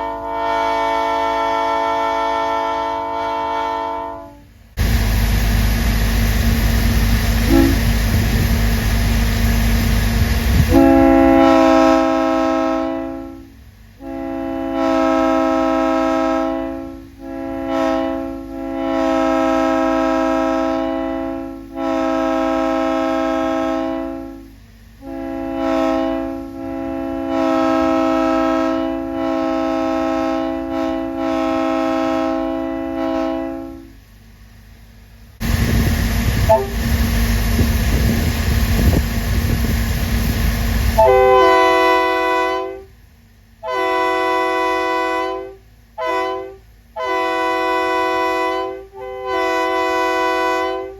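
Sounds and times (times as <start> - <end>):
multi-chime locomotive air horn: 0.0 - 4.6, 7.4 - 8.0, 10.5 - 34.0, 36.5 - 36.8, 41.0 - 43.0, 43.6 - 50.9
loud rushing noise: 35.4 - 41.0.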